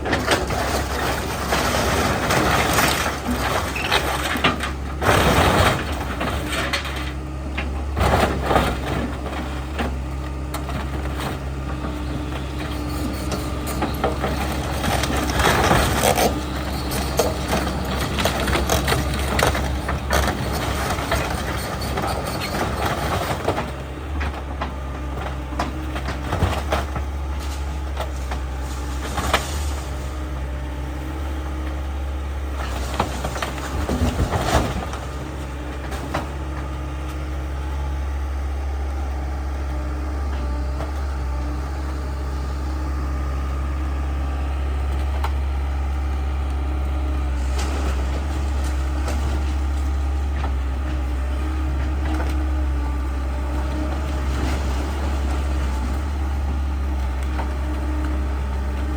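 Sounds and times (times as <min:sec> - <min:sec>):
heavy engine humming: 0:00.0 - 0:58.9.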